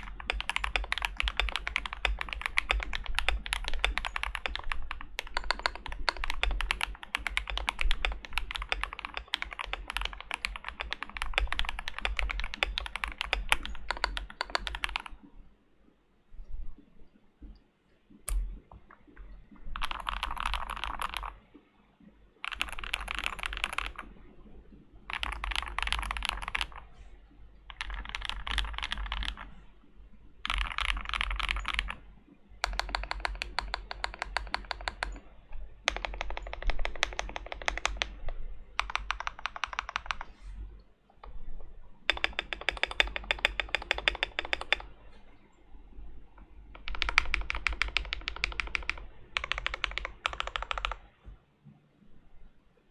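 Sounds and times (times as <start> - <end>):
mechanical keyboard typing: 0.0 - 15.2, 19.7 - 21.4, 22.4 - 24.2, 25.0 - 27.0, 27.6 - 29.6, 30.4 - 40.4, 42.1 - 45.0, 46.8 - 51.1.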